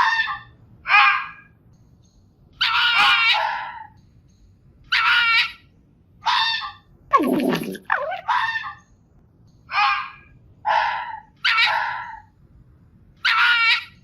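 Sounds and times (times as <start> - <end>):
fox barking: 10.7 - 12.2.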